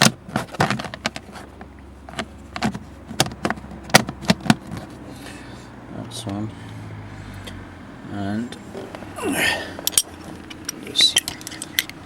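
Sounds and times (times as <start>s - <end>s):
parts and tools clicking and knocking: 0.0s - 5.0s, 8.7s - 12.0s.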